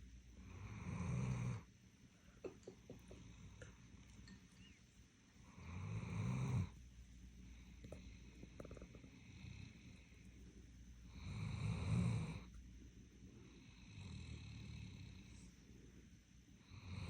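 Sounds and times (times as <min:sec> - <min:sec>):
dog snoring: 0:00.4 - 0:01.7, 0:05.4 - 0:06.8, 0:07.8 - 0:10.2, 0:11.1 - 0:12.6, 0:13.4 - 0:15.5, 0:16.6 - 0:17.0.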